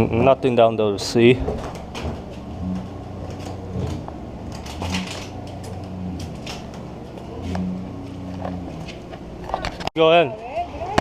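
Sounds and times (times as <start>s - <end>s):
low background hum: 0.0s - 11.0s
soft footsteps: 1.2s - 9.9s.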